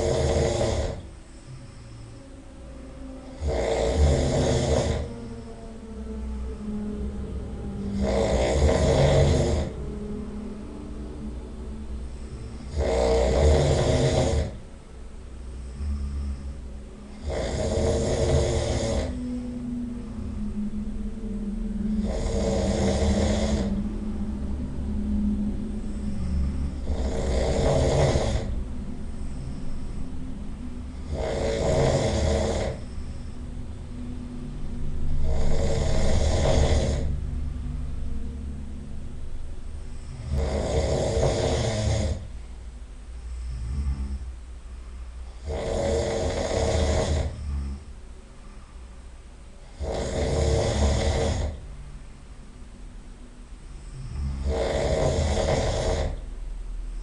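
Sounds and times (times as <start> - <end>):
person snoring loudly: 0.0 - 11.2, 12.0 - 14.6, 15.5 - 20.4, 21.1 - 24.8, 25.7 - 30.1, 30.8 - 34.0, 35.1 - 37.4, 39.9 - 42.4, 43.3 - 44.3, 45.2 - 47.9, 49.6 - 51.7, 53.8 - 56.3.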